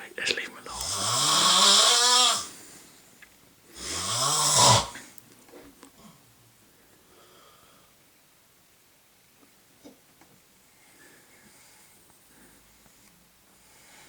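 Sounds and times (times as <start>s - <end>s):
man snoring loudly: 0.7s - 2.5s, 3.8s - 5.0s.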